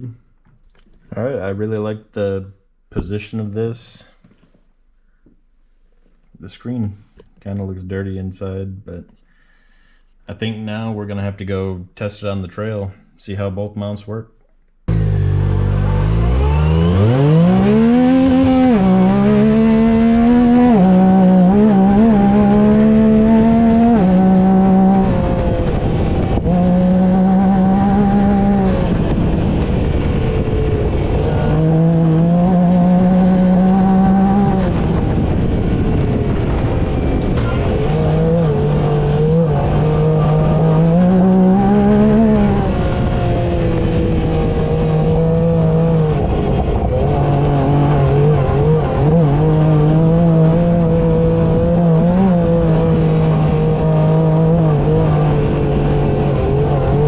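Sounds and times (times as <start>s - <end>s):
off-road vehicle engine revving: 14.9s - 57.0s.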